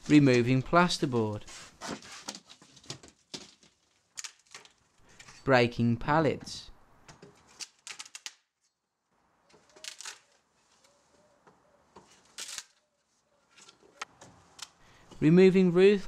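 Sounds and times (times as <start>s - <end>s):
wood cracking and creaking: 0.0s - 5.5s, 7.0s - 8.7s, 9.4s - 14.9s
faint squeaks: 9.4s - 14.5s.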